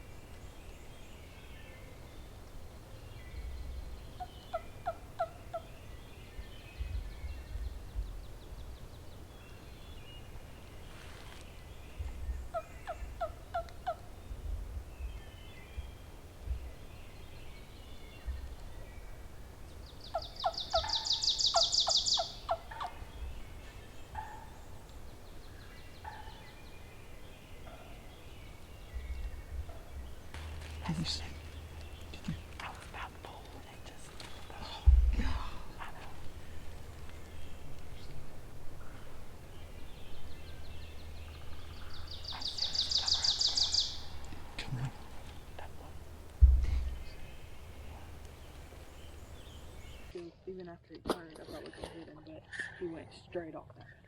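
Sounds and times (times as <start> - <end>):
small birds chirping: 0.0 - 50.2
turkey gobbling: 20.1 - 23.0.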